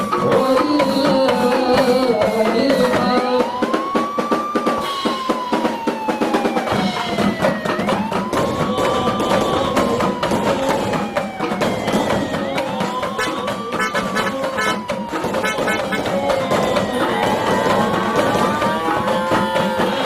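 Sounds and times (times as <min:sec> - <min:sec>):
music with busy drums: 0:00.0 - 0:20.0
wailing siren: 0:00.0 - 0:20.0.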